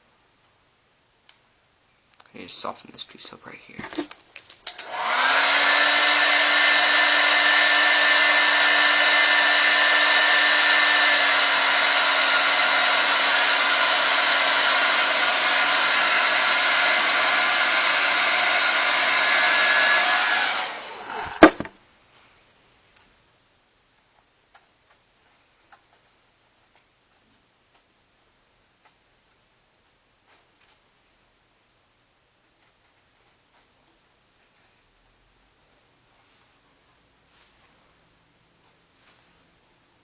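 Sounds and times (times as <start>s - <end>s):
hot-air blower running: 4.7s - 21.7s.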